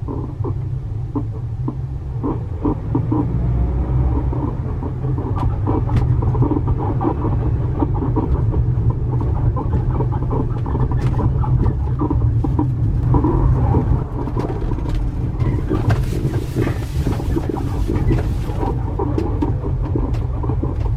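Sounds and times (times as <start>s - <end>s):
road rumble inside van: 0.0s - 20.9s.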